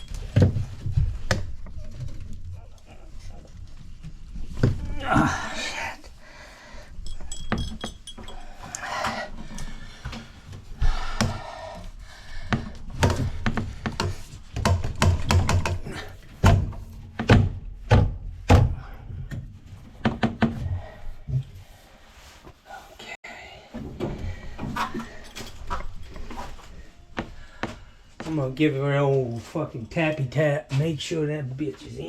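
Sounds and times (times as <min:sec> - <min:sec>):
person grunting: 0:04.8 - 0:06.0
heavy thunks and knocks: 0:12.4 - 0:21.0.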